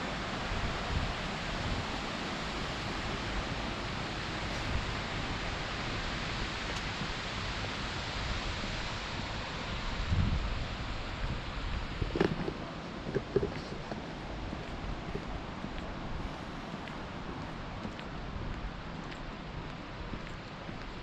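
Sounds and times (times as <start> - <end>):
river water rushing: 0.0 - 13.2.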